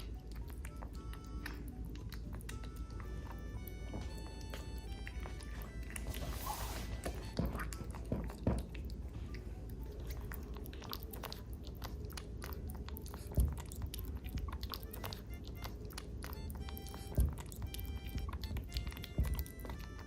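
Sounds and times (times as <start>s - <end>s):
kitten chewing food: 0.0s - 20.0s.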